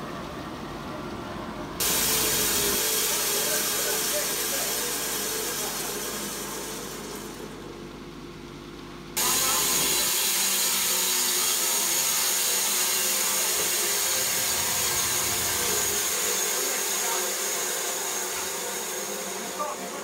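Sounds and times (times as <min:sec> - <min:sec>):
band sawmill sawing log: 0:09.2 - 0:20.0
low machine hum: 0:11.6 - 0:20.0.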